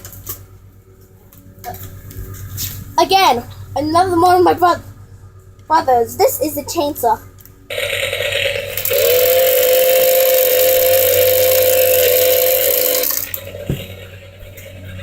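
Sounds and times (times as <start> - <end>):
toy chainsaw buzzing: 7.7 - 14.7.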